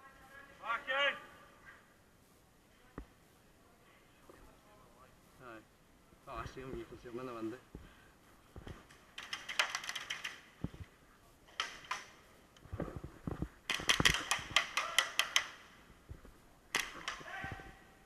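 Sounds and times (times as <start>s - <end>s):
airsoft guns firing full auto: 9.0s - 10.6s, 11.5s - 12.2s, 13.7s - 15.8s, 16.7s - 17.3s.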